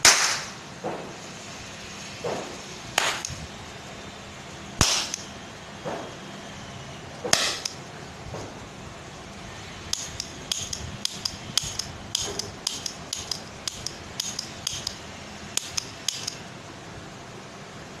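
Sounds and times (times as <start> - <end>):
toy cap gun clicking: 9.9 - 15.0, 15.6 - 16.4.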